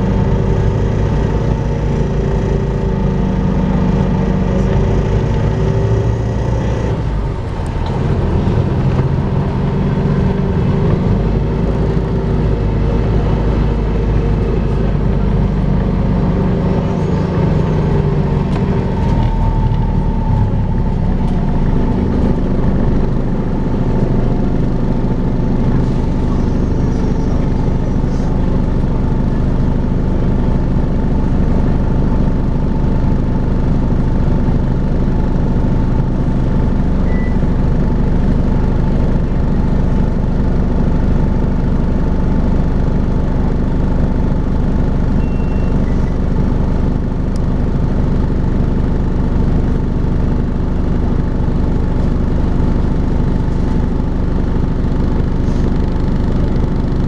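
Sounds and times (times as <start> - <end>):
bus engine droning: 0.0 - 57.0.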